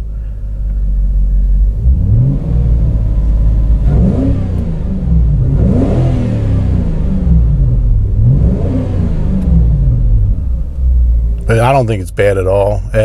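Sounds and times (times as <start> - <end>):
car engine drone revving: 0.0 - 13.0.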